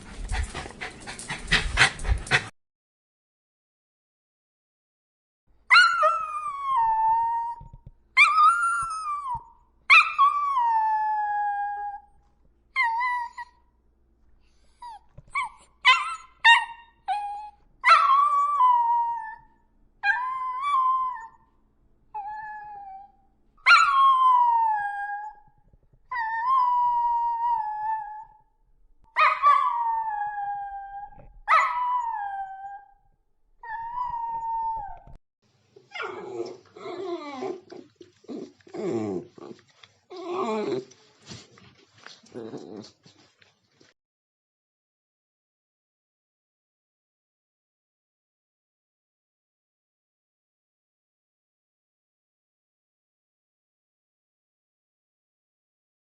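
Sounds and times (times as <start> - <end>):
dog howling and whining: 5.7 - 12.1, 12.8 - 13.6, 14.8 - 21.4, 22.2 - 25.5, 26.1 - 28.4, 29.2 - 33.0, 33.6 - 35.2, 35.9 - 41.0
dog yelping: 15.3 - 18.6, 29.2 - 29.9, 35.9 - 39.2.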